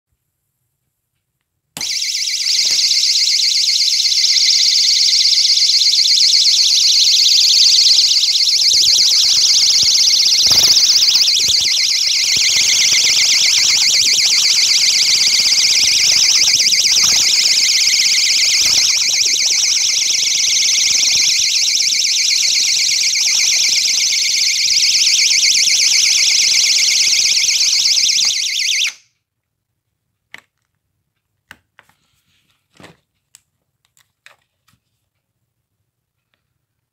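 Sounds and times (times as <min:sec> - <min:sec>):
high-pitched fluttering alarm siren: 0:01.8 - 0:29.1.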